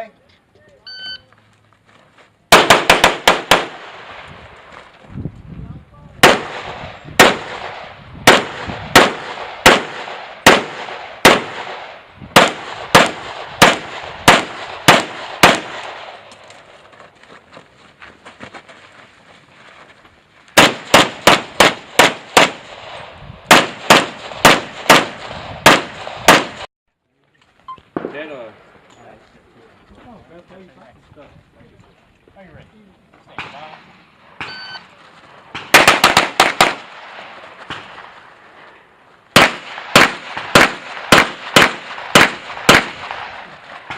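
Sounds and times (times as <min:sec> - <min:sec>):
pistol shots: 0:02.5 - 0:04.3, 0:06.2 - 0:16.4, 0:20.6 - 0:26.7, 0:35.5 - 0:38.2, 0:39.3 - 0:43.9.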